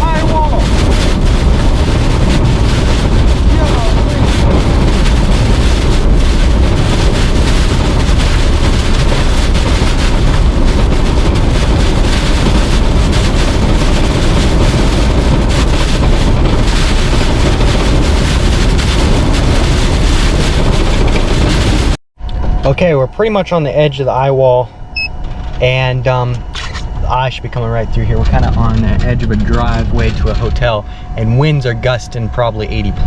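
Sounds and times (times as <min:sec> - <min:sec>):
strong wind on microphone: 0:00.0 - 0:22.8, 0:24.6 - 0:33.0.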